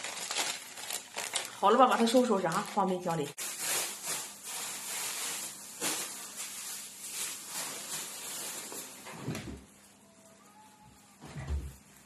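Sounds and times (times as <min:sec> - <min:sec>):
plastic bags crinkling: 0:00.0 - 0:12.0.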